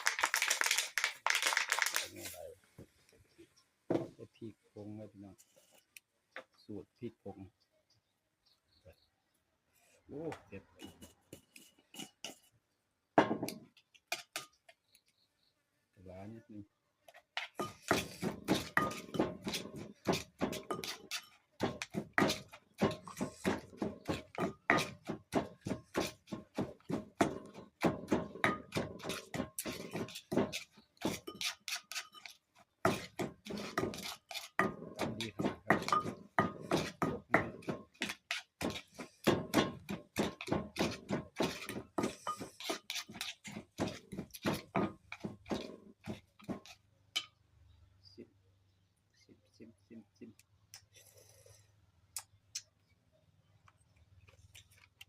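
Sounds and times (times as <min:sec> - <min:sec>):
pestle pounding in wooden mortar: 0:17.4 - 0:47.3.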